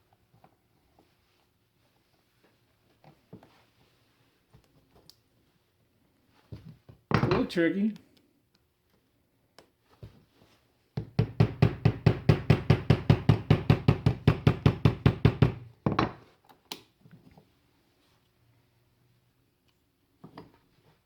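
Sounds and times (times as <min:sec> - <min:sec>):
hammer tapping steel punch: 0:11.0 - 0:16.1.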